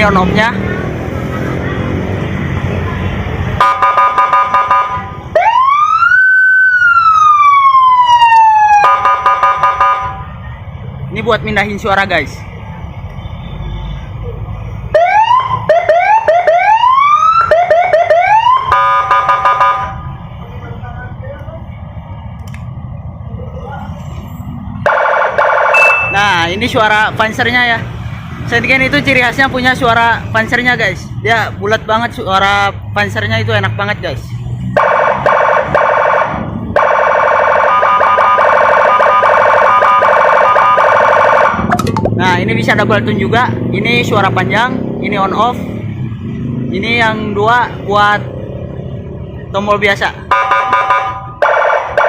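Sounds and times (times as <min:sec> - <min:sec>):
electronic police siren: 0:03.6 - 0:10.3, 0:14.9 - 0:20.1, 0:24.8 - 0:26.3, 0:34.8 - 0:41.8, 0:50.3 - 0:52.0.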